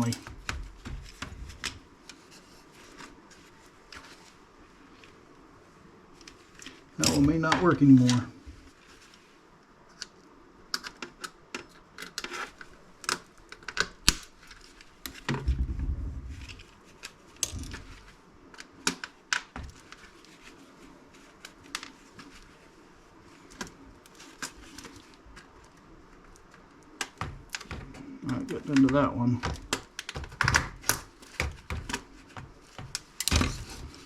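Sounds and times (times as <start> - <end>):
dull low thump: 15.4 - 16.4.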